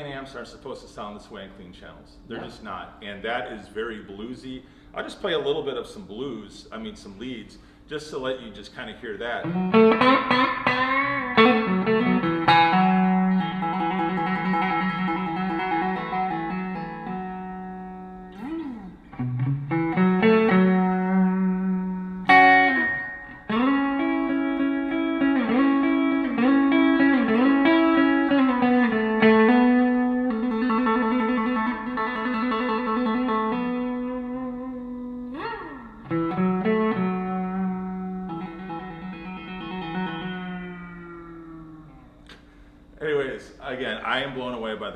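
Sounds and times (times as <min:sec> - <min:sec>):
bluesy electric guitar lead: 0:09.4 - 0:42.8.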